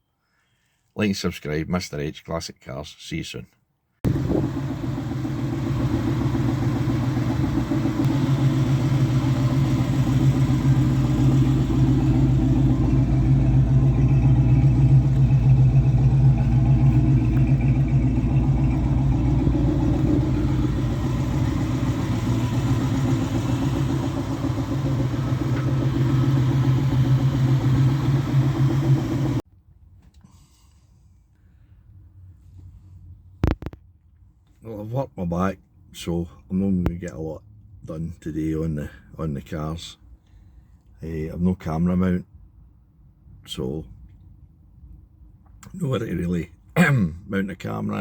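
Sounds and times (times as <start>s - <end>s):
car engine running: 4.1s - 29.4s.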